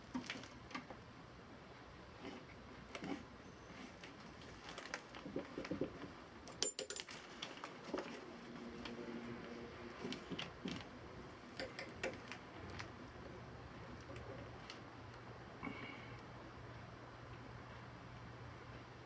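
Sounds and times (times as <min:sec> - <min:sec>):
tools clicking and tapping: 0:06.5 - 0:07.1, 0:11.6 - 0:12.2.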